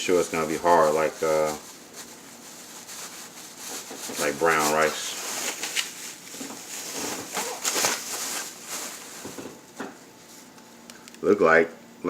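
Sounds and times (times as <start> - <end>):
dry rice rustling and pattering: 0.0 - 9.6.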